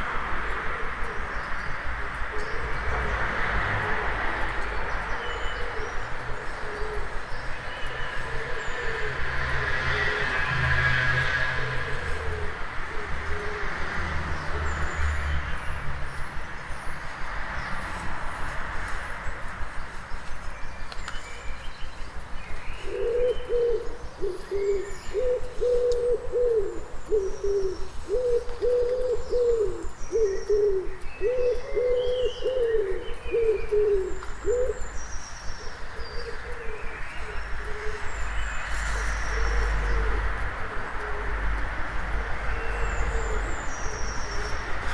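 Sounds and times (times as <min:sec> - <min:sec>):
songbirds chirping: 0:00.0 - 0:44.9
pigeon cooing: 0:22.9 - 0:34.8.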